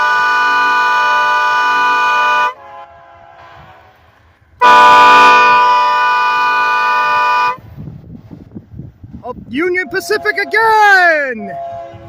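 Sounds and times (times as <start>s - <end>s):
locomotive air horn blasts: 0.0s - 7.7s, 9.8s - 12.0s.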